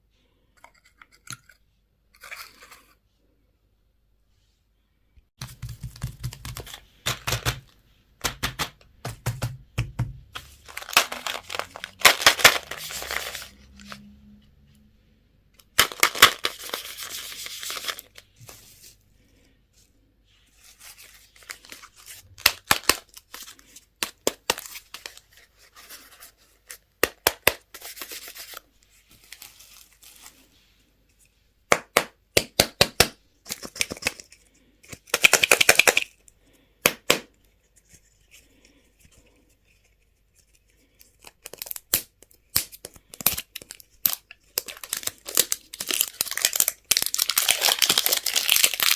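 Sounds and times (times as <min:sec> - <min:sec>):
packaging crinkling and tearing: 0:10.4 - 0:14.0, 0:15.7 - 0:18.3, 0:21.3 - 0:26.1, 0:40.8 - 0:48.9.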